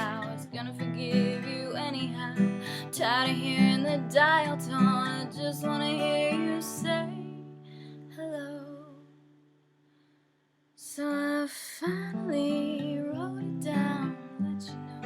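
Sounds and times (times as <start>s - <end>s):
woman singing: 0.0s - 7.5s, 8.1s - 9.1s, 10.8s - 15.0s
acoustic guitar strumming: 0.0s - 7.6s.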